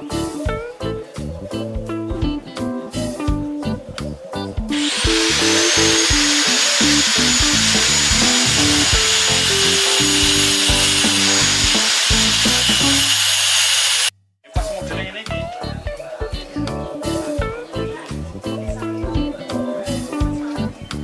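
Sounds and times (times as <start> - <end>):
guitar music: 0.0 - 13.2
power tool grinding: 4.7 - 14.1.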